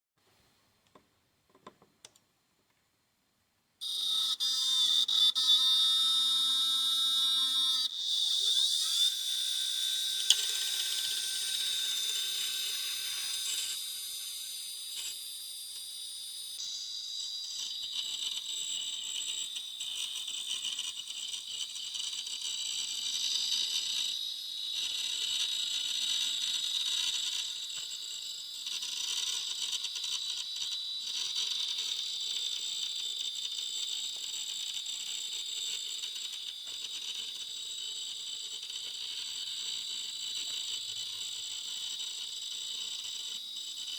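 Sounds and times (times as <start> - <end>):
hard drive whining: 3.8 - 33.0.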